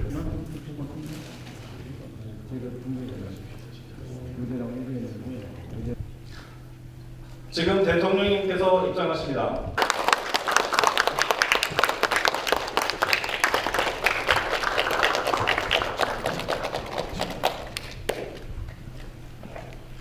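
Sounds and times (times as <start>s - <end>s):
audience applauding: 9.8s - 18.4s.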